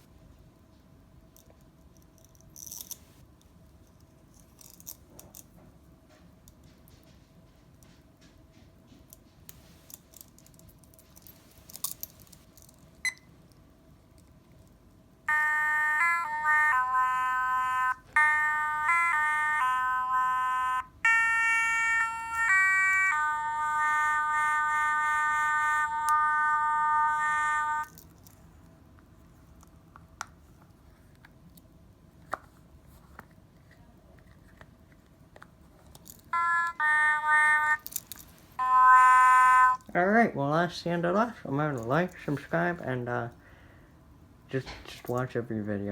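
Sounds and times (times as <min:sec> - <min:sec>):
buzzy electronic instrument notes: 0:15.3 - 0:27.9.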